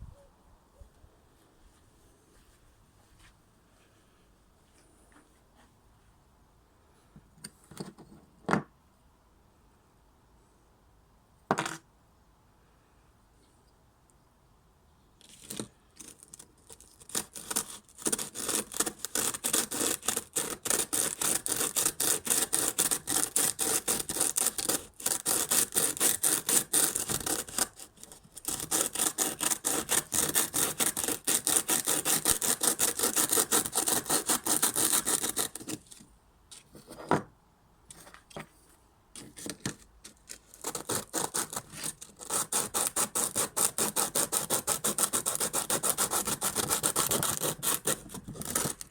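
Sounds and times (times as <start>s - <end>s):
brake pads scraping on sandpaper: 15.6s - 35.8s.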